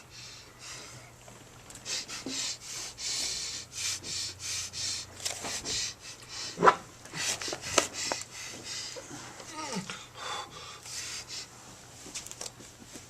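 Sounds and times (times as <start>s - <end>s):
person breathing hard: 0.0s - 1.1s, 1.8s - 11.8s.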